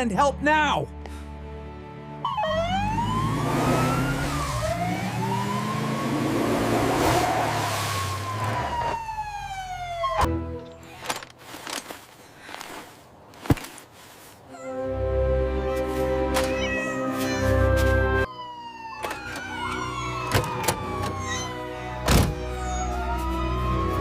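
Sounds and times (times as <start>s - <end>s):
ambulance siren wailing: 2.2s - 10.4s, 16.7s - 24.0s.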